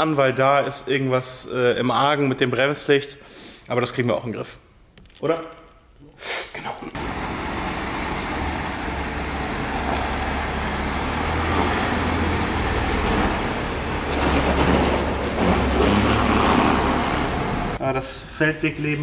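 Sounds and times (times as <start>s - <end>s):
car engine hum: 7.0s - 17.8s
tyre and road noise: 7.0s - 17.8s.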